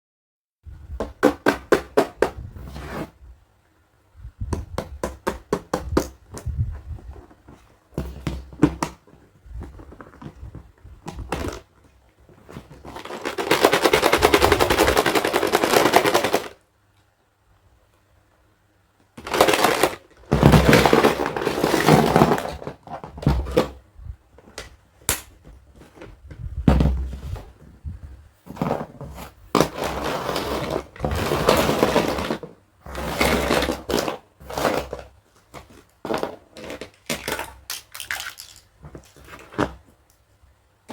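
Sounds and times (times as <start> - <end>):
plastic packaging crinkling: 12.5 - 16.6, 19.2 - 22.7, 35.6 - 39.8.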